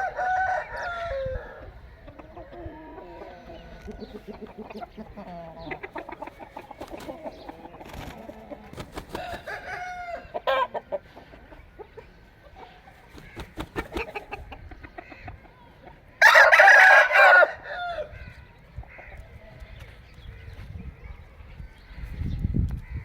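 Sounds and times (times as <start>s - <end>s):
rooster crowing: 0.0s - 1.7s, 9.2s - 10.7s, 16.2s - 18.2s
chicken clucking: 1.6s - 16.1s.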